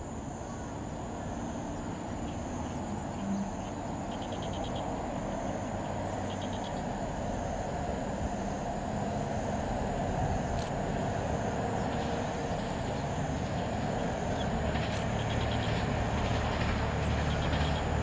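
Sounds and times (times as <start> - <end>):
diesel railcar rumble: 0.0 - 18.0
insects buzzing: 0.0 - 18.0
rapid clicking calls: 11.9 - 18.0.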